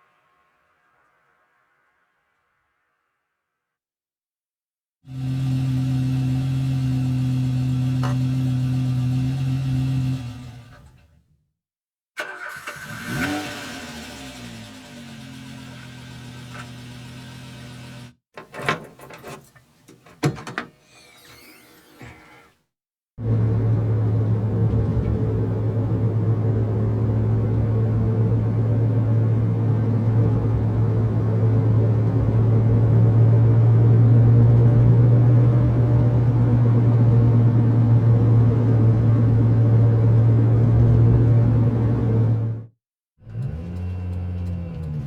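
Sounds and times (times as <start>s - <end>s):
car engine and road drone: 5.1s - 11.0s, 12.2s - 18.2s, 23.2s - 45.0s.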